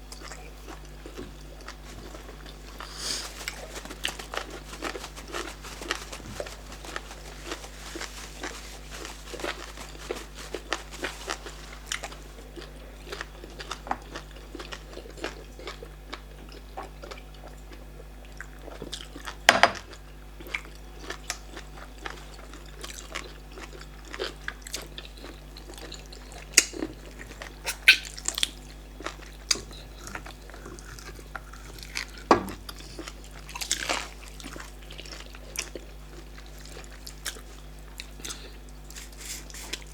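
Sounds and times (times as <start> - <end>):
chewing smacking and slurping: 27.2 - 39.9
loud sharp mouth clicks: 27.6 - 28.2.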